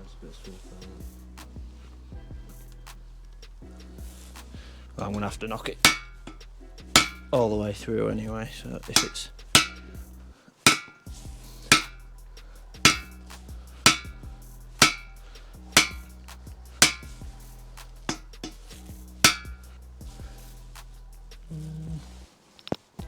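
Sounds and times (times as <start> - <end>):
hammer striking metal tool: 5.8 - 6.4, 7.0 - 7.4, 9.0 - 10.0, 10.7 - 11.1, 11.7 - 12.0, 12.8 - 13.2, 13.9 - 14.2, 14.8 - 15.2, 15.8 - 16.1, 16.8 - 17.2, 18.1 - 18.6, 19.2 - 19.6.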